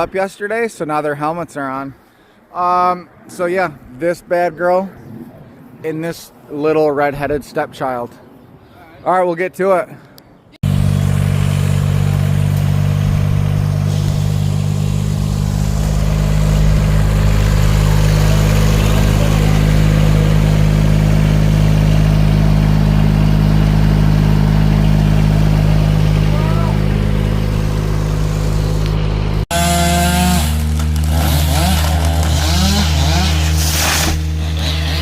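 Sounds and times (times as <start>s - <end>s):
large engine humming: 10.6s - 35.0s.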